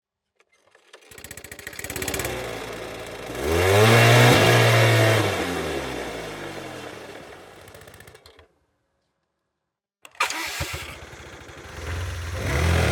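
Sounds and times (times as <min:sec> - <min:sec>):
autorickshaw engine chugging: 0:01.1 - 0:03.4, 0:10.2 - 0:12.9.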